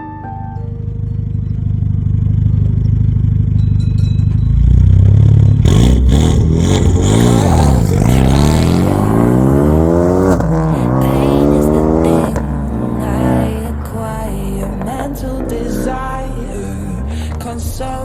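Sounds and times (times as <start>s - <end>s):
car engine idling and revving: 0.5s - 18.0s.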